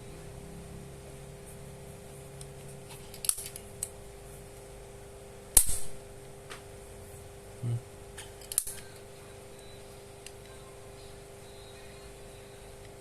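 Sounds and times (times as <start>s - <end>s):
injector pen spring clicks: 8.4s - 8.9s.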